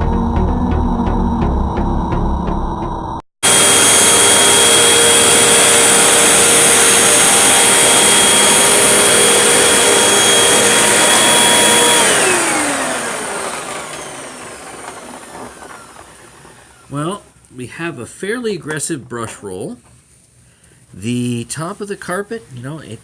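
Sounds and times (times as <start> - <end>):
vacuum cleaner motor whine: 3.4 - 17.4.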